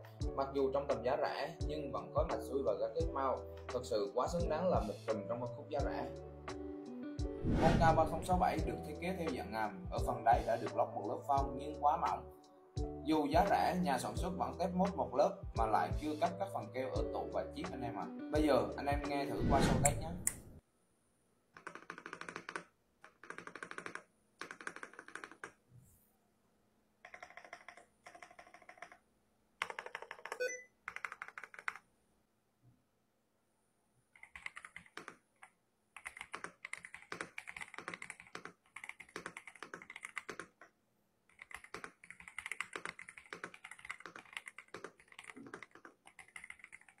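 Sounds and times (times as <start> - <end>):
mechanical keyboard typing: 21.6 - 25.6, 27.0 - 29.0, 29.6 - 31.8, 34.2 - 40.7, 41.3 - 47.0.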